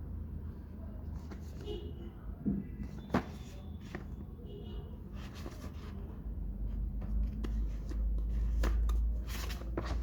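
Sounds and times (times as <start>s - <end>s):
packaging rustling and scraping: 7.1s - 10.0s.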